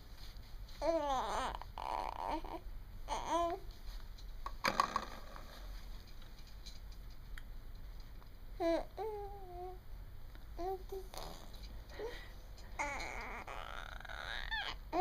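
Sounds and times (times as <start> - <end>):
baby babbling: 0.8 - 3.6, 8.6 - 9.8, 10.6 - 11.6, 12.8 - 15.0.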